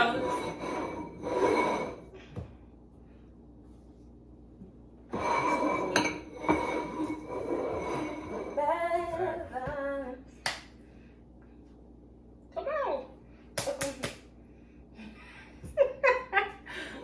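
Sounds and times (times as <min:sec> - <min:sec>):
woman singing: 0:08.6 - 0:10.4.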